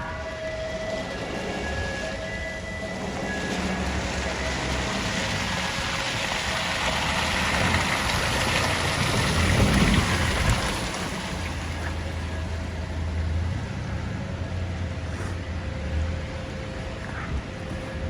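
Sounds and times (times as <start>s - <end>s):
heavy truck engine: 0.0s - 18.0s
tyres hissing on slush: 1.0s - 12.5s.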